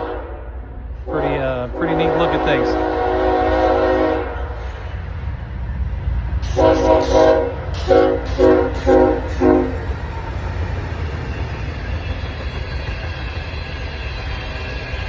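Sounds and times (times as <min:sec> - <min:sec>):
train horn blasts: 0:00.0 - 0:04.6, 0:06.4 - 0:09.8
train rumbling by: 0:00.0 - 0:15.0.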